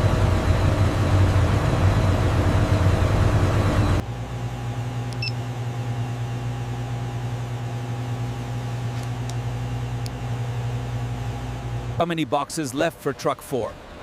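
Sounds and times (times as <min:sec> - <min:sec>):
loud engine-like running sound: 0:00.0 - 0:12.1
low machine hum: 0:00.0 - 0:12.4.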